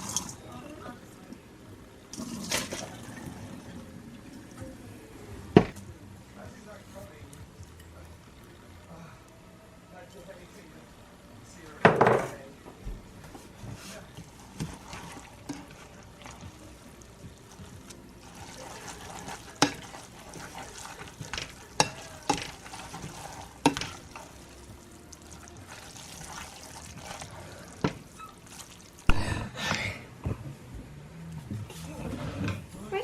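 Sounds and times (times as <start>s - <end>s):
dishes clattering: 11.8s - 12.4s, 18.4s - 24.3s
utensils and dishes clinking: 14.2s - 28.8s.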